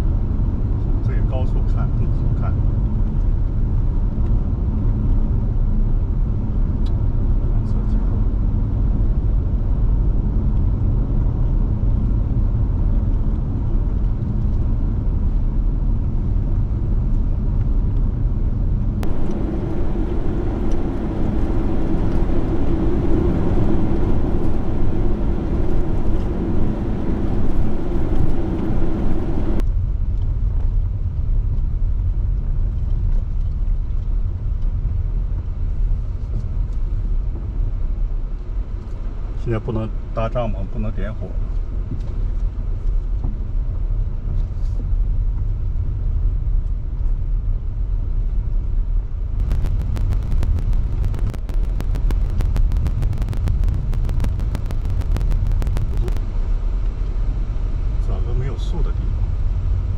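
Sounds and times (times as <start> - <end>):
road and engine rumble: 19.0 - 29.6, 49.1 - 59.9
steady hum: 19.0 - 29.6, 49.4 - 56.7.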